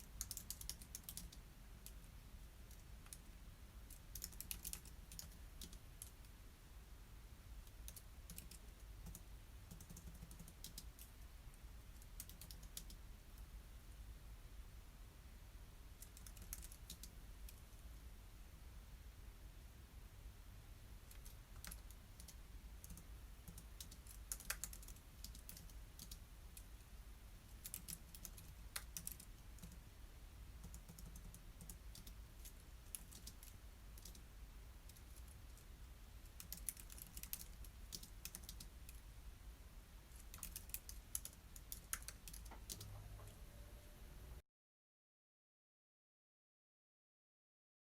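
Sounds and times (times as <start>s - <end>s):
typing on computer keyboard: 0.0s - 2.0s, 3.9s - 6.2s, 7.7s - 11.1s, 12.0s - 13.0s, 16.0s - 17.6s, 21.1s - 26.7s, 27.5s - 29.8s, 30.6s - 34.2s, 36.3s - 39.0s, 40.2s - 43.0s
faint low steady hum: 0.0s - 44.4s.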